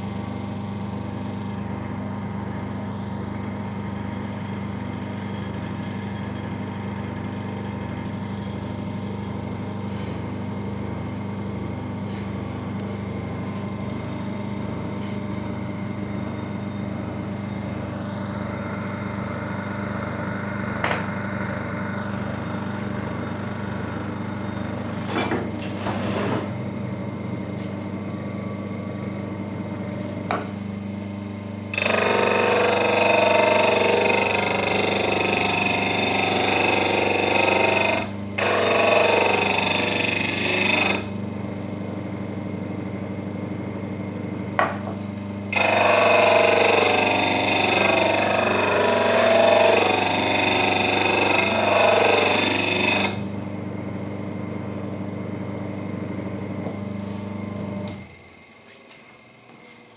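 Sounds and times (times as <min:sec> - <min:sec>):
disc sander motor humming: 0:31.7 - 0:41.7, 0:45.2 - 0:53.7
sander grinding: 0:31.8 - 0:41.2, 0:45.5 - 0:53.3.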